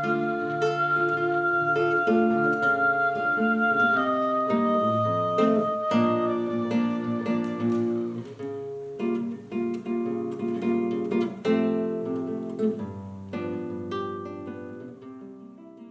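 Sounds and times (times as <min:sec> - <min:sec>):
acoustic guitar picked notes: 0:00.0 - 0:15.9.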